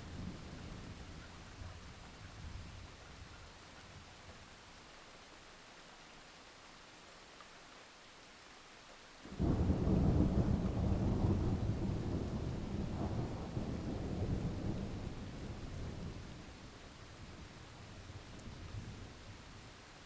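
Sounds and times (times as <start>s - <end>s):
steady rain: 0.0s - 20.0s
thunder rumbling: 9.3s - 16.6s.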